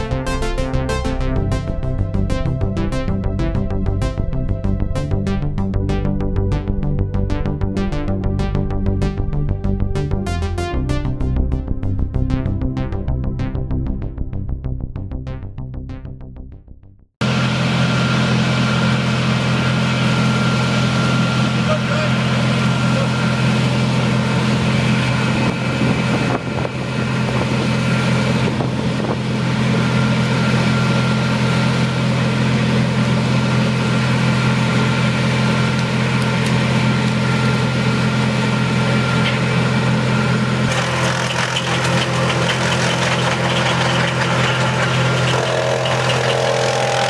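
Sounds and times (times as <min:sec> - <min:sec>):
large engine idling: 0:17.2 - 0:47.0.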